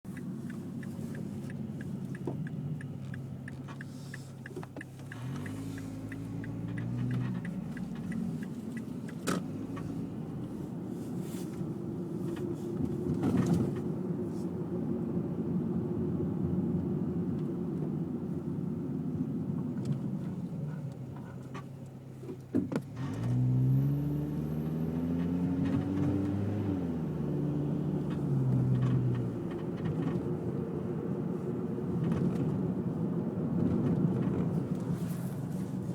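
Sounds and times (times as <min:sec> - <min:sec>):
road and engine rumble: 0:00.0 - 0:35.9
fast regular ticking: 0:00.1 - 0:09.2
car squeaking: 0:00.1 - 0:10.0.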